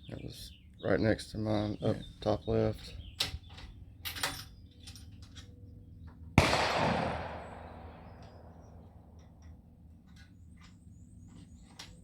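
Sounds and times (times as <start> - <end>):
rifle shot: 6.4 - 8.8.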